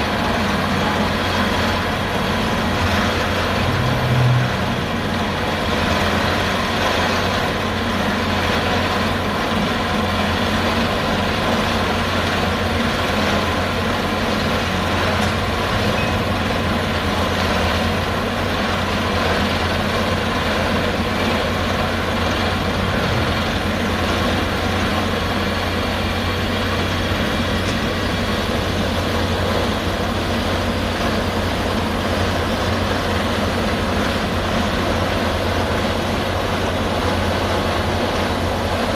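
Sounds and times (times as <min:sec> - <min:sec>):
rock drilling machinery: 0:00.0 - 0:38.9.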